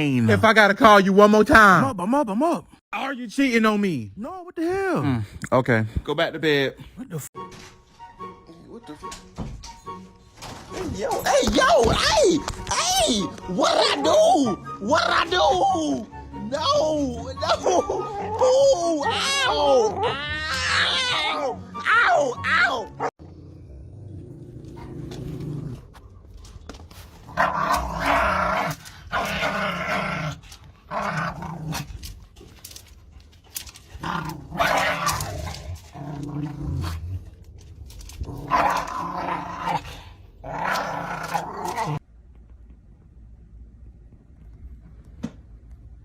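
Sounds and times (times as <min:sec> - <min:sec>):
dog growling: 0:22.9 - 0:26.0, 0:27.3 - 0:32.1, 0:33.9 - 0:37.4, 0:38.2 - 0:42.0.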